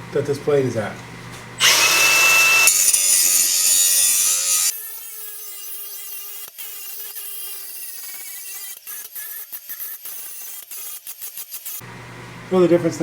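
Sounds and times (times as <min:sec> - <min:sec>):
grinding wheel sharpening blade: 0:01.6 - 0:11.8.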